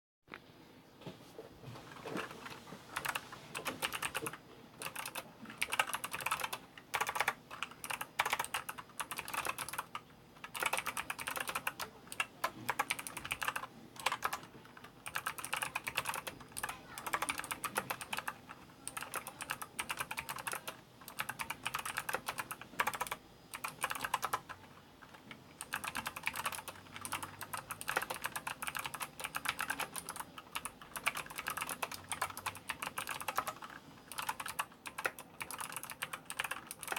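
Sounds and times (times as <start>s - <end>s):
mechanical keyboard typing: 2.2s - 36.9s.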